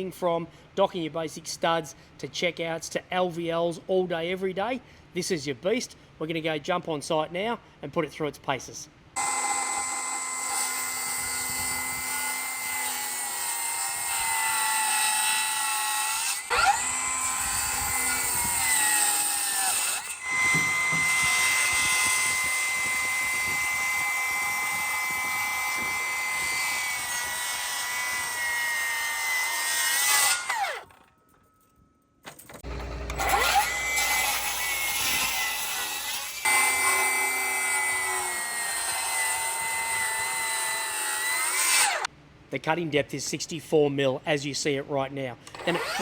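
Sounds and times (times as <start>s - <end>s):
circular saw cutting wood: 9.2s - 31.1s, 32.6s - 42.1s, 45.5s - 46.0s.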